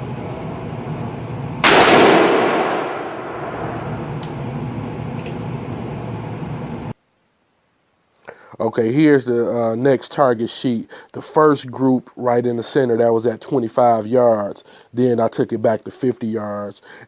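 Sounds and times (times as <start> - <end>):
steady background noise: 0.0 - 8.1
rifle shot ringing: 1.6 - 4.1.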